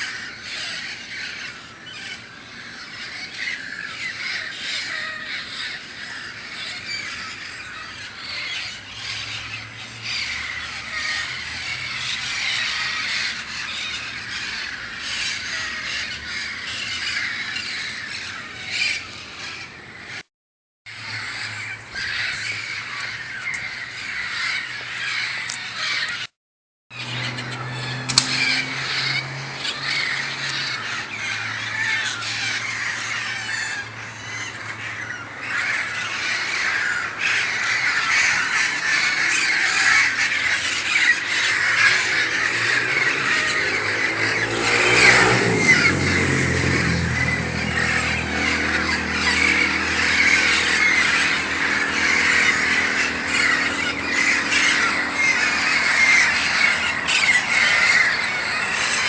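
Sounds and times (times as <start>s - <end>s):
parakeets squawking and chattering: 0.0s - 20.3s, 20.9s - 26.3s, 26.9s - 59.0s
low drone: 26.9s - 59.0s.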